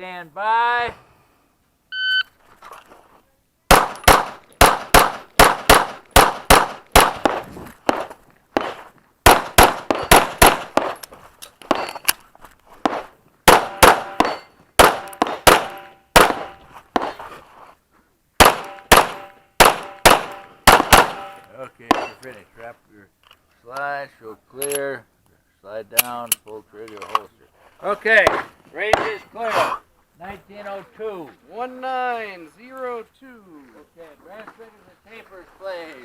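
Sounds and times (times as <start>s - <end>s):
shot timer beep: 1.9s - 2.3s
pistol shots: 3.7s - 11.0s, 12.9s - 17.2s, 18.4s - 22.2s
metallic ring: 11.7s - 12.1s, 14.0s - 16.6s.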